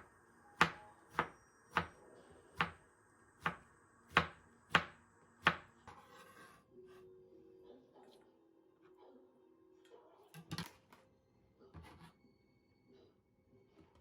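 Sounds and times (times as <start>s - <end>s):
knife chopping on cutting board: 0.6s - 2.0s, 2.6s - 2.8s, 3.4s - 6.2s.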